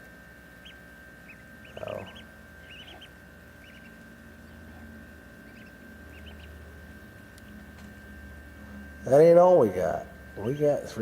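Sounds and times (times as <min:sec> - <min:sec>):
steady low hum: 0:00.0 - 0:11.0
ducks giving short high calls: 0:00.6 - 0:04.7.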